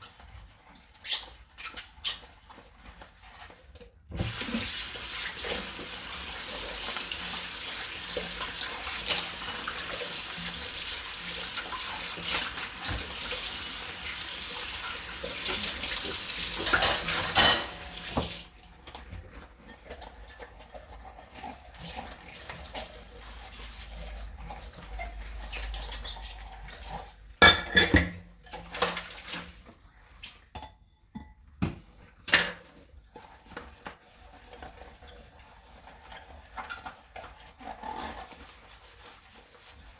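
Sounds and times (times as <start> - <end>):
tap running into sink: 4.2 - 18.5
dishes and cutlery clinking: 16.5 - 18.4, 27.4 - 28.3.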